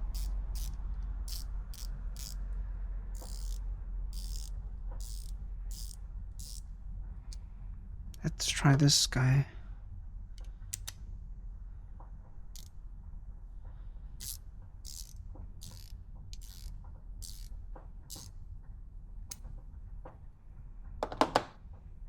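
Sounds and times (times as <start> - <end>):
hand ratchet clicking: 0.0 - 2.4, 3.2 - 6.6, 14.2 - 18.3
socket clicking onto ratchet: 0.0 - 2.4, 3.2 - 6.7, 10.4 - 11.0, 14.2 - 18.4.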